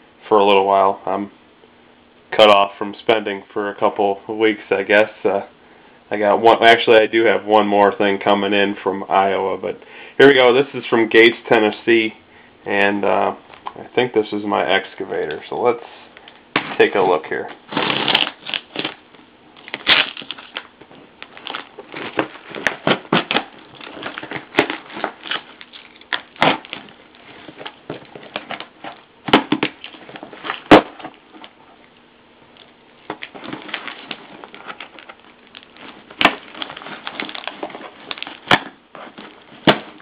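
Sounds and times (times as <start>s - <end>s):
cardboard crackling and crinkling: 16.8s - 40.0s
packing tape tearing: 17.6s - 19.0s, 19.6s - 31.6s, 32.6s - 40.0s.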